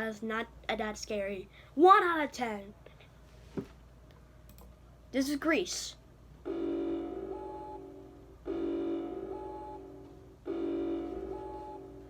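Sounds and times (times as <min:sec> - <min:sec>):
chord-like alarm tone: 0:06.4 - 0:12.0.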